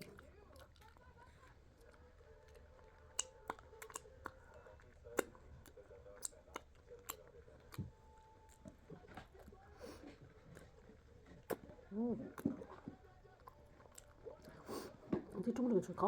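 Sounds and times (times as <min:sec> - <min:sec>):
person chewing food: 0:00.0 - 0:15.4.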